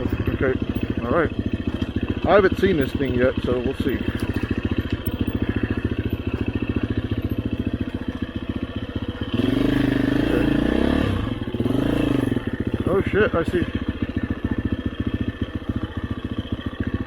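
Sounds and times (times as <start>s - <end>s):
motorcycle engine idling and revving: 0.0s - 17.0s.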